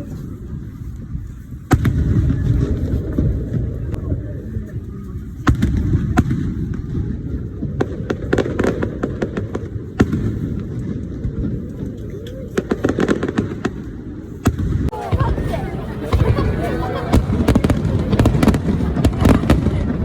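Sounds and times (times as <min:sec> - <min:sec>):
crackling fireworks reports: 0:00.0 - 0:20.0
fireworks bangs: 0:05.4 - 0:20.0.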